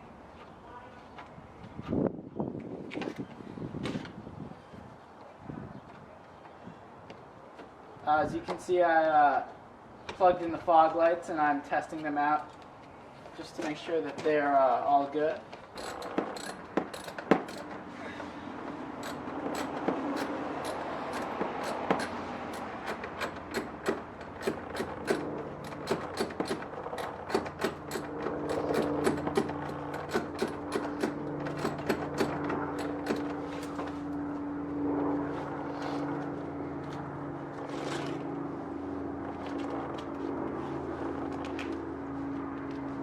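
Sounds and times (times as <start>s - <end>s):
tool clicks and scrapes: 15.7s - 17.8s, 19.0s - 34.0s.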